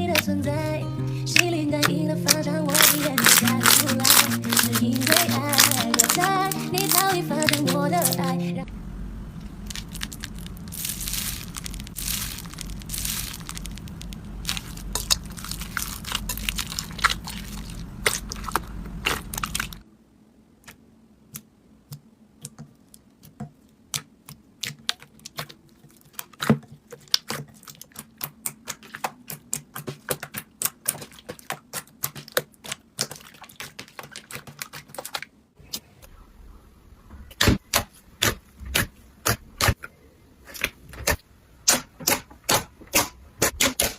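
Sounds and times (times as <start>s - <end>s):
low background hum: 0.0s - 26.9s
slime crackling and popping: 1.4s - 8.3s, 9.4s - 19.8s, 23.9s - 35.2s.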